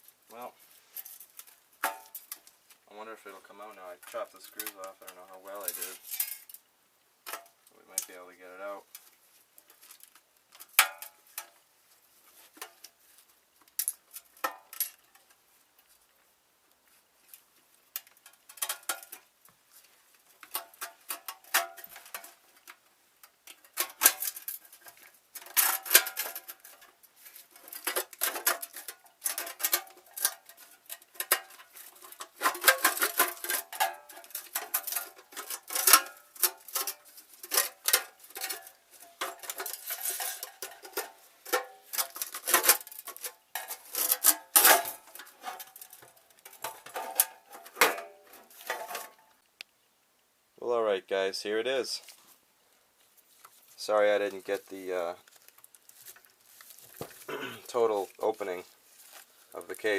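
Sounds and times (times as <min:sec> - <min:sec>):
metal clinking and scraping: 0:00.0 - 0:02.6, 0:03.6 - 0:06.7, 0:12.2 - 0:15.4, 0:17.3 - 0:49.4.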